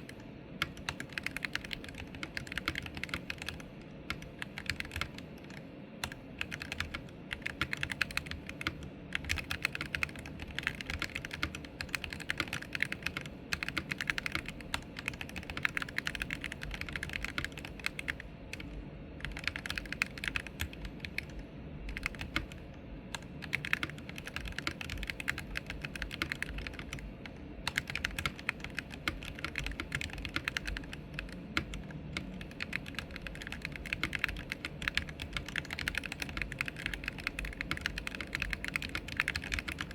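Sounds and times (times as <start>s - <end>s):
fast keyboard typing: 0.0s - 39.9s.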